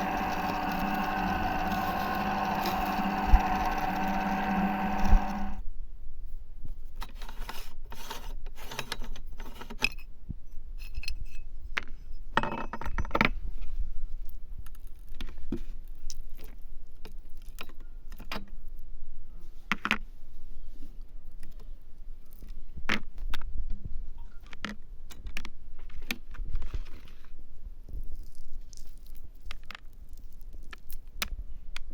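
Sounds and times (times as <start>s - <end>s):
hard candy cracking: 0.0s - 5.6s
meat grinder humming: 0.0s - 5.6s.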